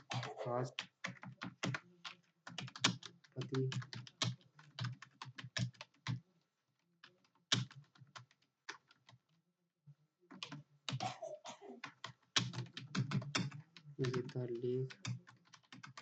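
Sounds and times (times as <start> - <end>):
keyboard typing: 0.0 - 6.2, 7.0 - 9.3, 10.3 - 16.0.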